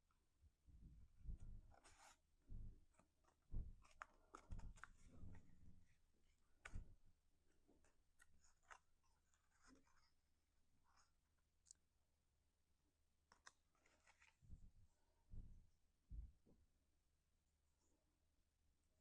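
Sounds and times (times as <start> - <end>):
paper rustling: 1.3 - 11.8, 13.3 - 14.6.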